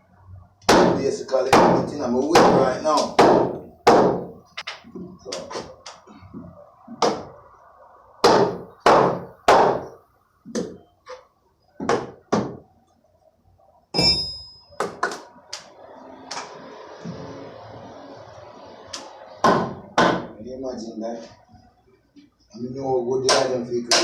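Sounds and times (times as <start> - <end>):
ringing metallic clang: 13.9 - 14.8.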